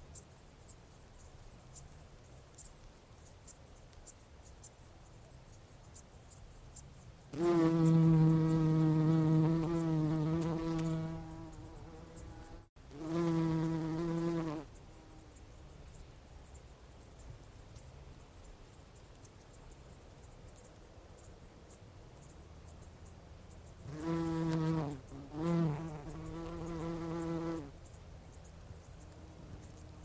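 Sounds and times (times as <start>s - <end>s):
bumblebee buzzing in flight: 7.4s - 15.2s, 23.9s - 27.7s.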